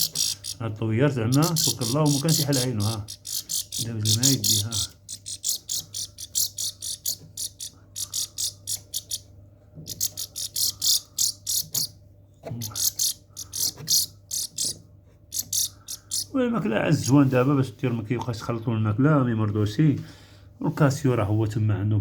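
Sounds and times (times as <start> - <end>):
young birds chirping: 0.0 - 0.6, 1.3 - 9.3, 9.9 - 11.9, 12.6 - 16.3
faint steady hum: 0.0 - 22.0.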